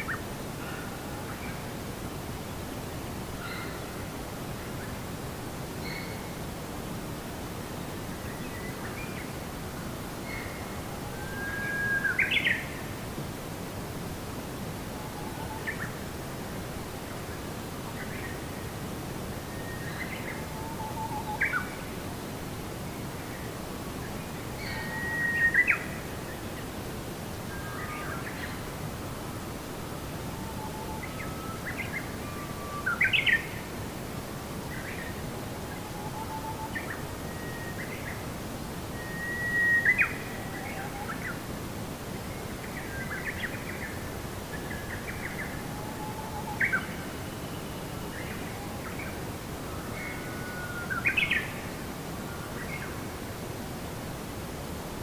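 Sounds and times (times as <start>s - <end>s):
steady background hiss: 0.0s - 55.0s
birds singing: 30.4s - 33.6s, 39.0s - 41.4s.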